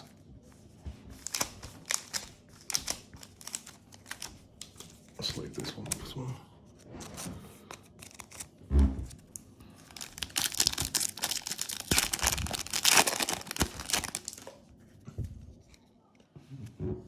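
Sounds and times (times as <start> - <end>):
foil wrapper tearing and crinkling: 1.2 - 4.4, 9.9 - 14.6.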